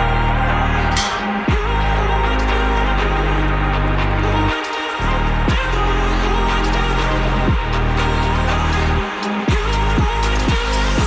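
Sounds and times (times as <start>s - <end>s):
electronic music with heavy bass: 0.0s - 11.0s
deep falling bass hits: 0.8s - 3.0s.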